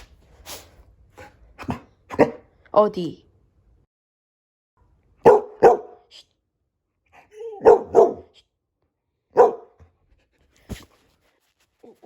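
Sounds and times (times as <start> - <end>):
dog barking: 1.2 - 2.5, 5.2 - 6.1, 7.4 - 8.4, 9.3 - 9.8
dog whining: 7.2 - 7.9.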